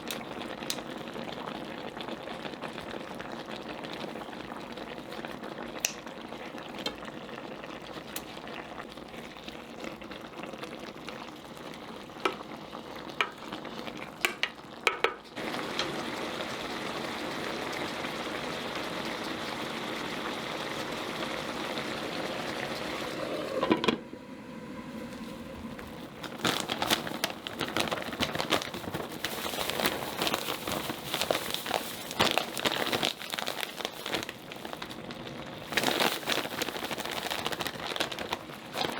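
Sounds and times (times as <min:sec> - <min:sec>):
food sizzling in a pan: 0:00.0 - 0:38.9
spattering crackle: 0:25.2 - 0:38.9.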